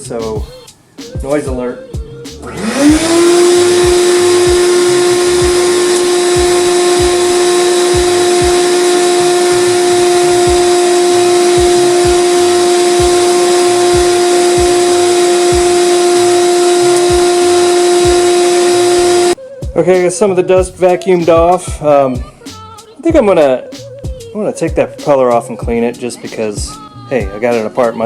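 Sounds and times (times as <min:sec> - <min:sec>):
vacuum cleaner whining: 0:02.4 - 0:19.4.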